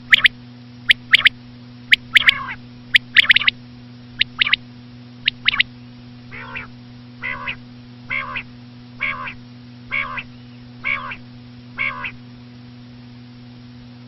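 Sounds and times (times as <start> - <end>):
quail calling: 0.0 - 0.3, 0.9 - 1.3, 1.9 - 3.6, 4.2 - 4.6, 5.2 - 5.7, 6.3 - 12.2.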